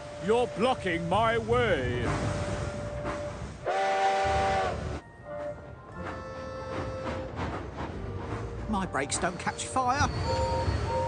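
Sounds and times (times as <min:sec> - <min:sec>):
steam whistle chord: 0:03.7 - 0:05.0.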